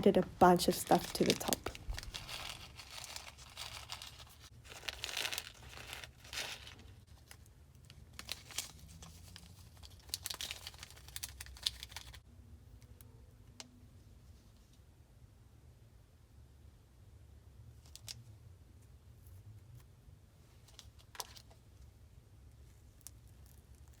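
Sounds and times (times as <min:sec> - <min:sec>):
sticky slime crackling and popping: 0:00.5 - 0:06.9.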